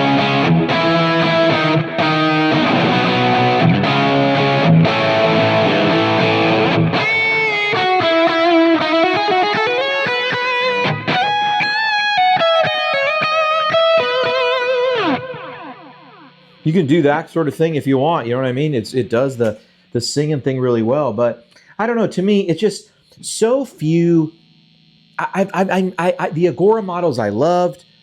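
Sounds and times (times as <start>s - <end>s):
electric guitar lead with vibrato: 0.0s - 16.6s
overdriven electric guitar chords: 0.0s - 16.7s.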